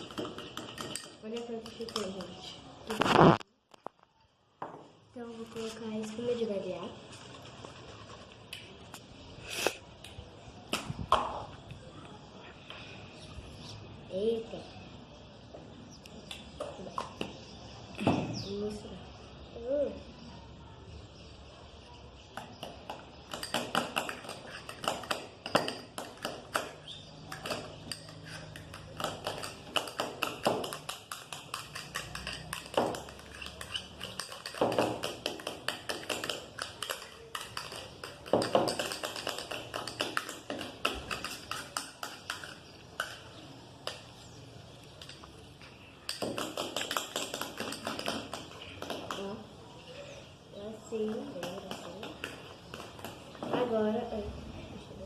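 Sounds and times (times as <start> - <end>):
spoon tapping container: 0.0 - 2.4, 23.3 - 43.2, 46.1 - 49.2
spoon stirring foam: 0.0 - 2.6, 23.1 - 44.0, 46.0 - 49.2.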